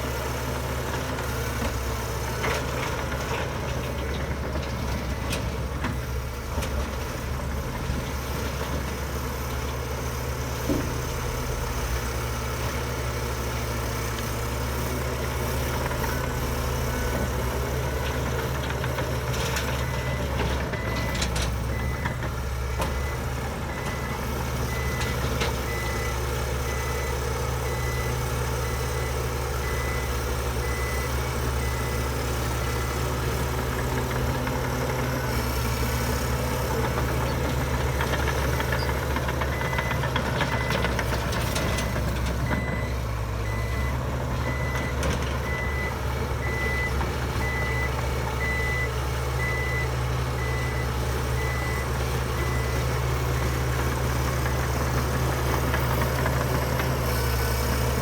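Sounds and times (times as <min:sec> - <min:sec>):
diesel earthmoving machinery running: 0:00.0 - 0:58.0
reversing alarm beeping: 0:15.4 - 0:57.1.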